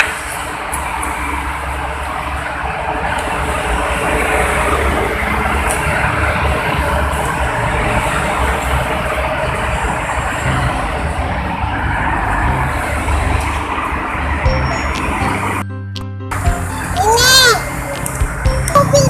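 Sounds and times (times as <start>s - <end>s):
deep traffic rumble: 0.0s - 19.0s
road traffic passing: 0.0s - 19.0s.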